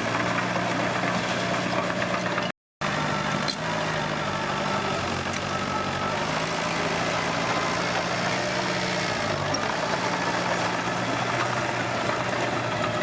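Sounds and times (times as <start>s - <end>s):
bulldozer diesel engine running: 0.0s - 13.0s.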